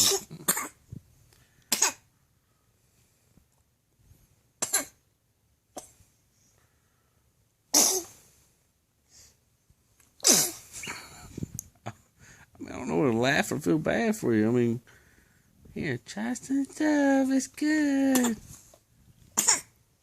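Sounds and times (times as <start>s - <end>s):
baby sneezing: 0.0s - 0.8s, 1.7s - 2.1s, 4.6s - 5.0s, 5.7s - 6.0s, 7.7s - 8.2s, 10.2s - 10.8s, 18.1s - 18.5s, 19.4s - 19.8s.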